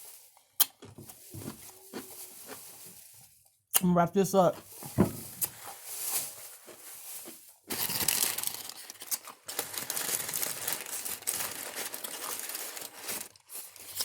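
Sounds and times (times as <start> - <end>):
paper wrapper crinkling: 4.7 - 14.0.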